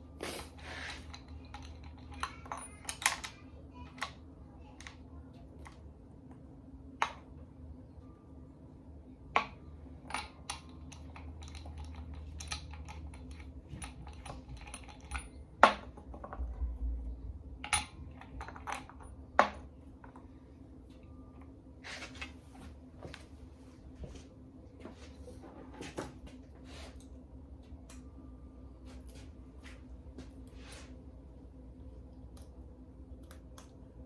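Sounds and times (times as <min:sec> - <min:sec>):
metal tools clinking: 0:00.3 - 0:03.4, 0:10.1 - 0:16.4.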